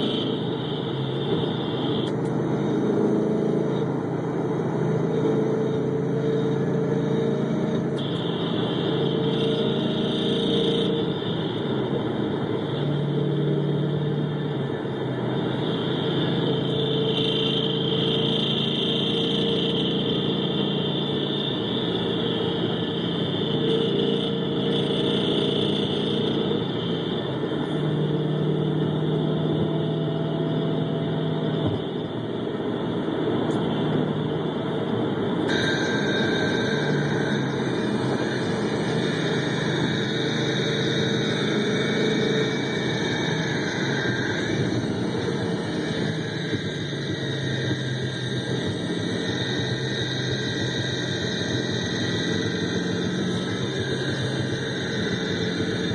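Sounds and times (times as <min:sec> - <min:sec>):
car engine running: 0:00.0 - 0:55.9.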